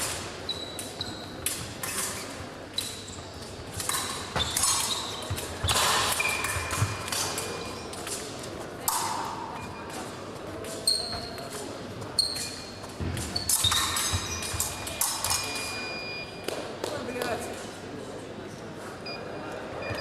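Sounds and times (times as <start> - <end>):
fencing blades clashing: 0.0 - 15.9.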